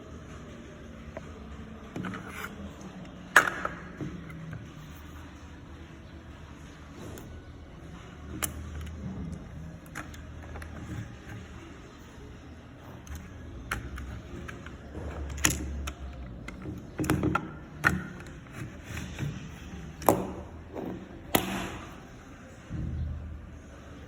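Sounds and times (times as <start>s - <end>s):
air pistol shots: 21.4s - 21.9s.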